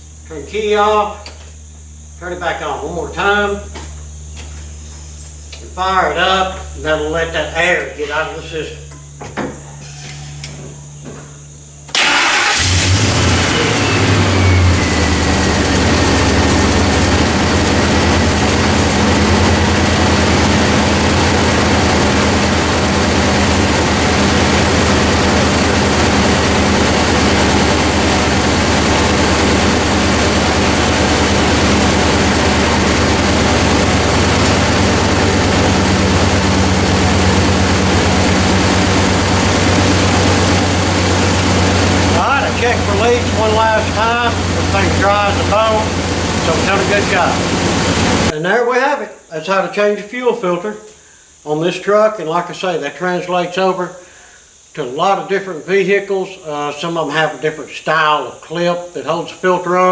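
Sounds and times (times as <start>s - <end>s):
engine whine: 0.0s - 48.4s
engine starting and idling: 11.9s - 48.4s.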